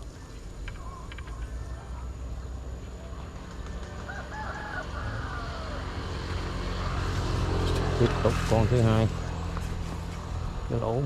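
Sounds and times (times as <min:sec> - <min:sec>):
rooster crowing: 0:03.9 - 0:07.0.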